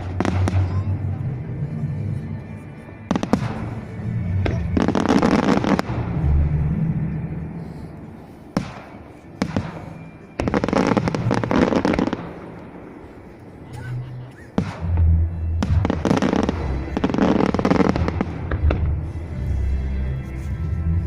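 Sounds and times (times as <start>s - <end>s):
firework bangs: 0.0s - 1.0s, 3.1s - 6.6s, 8.5s - 12.6s, 14.5s - 19.1s
firework crackling: 0.0s - 1.6s, 3.1s - 19.2s.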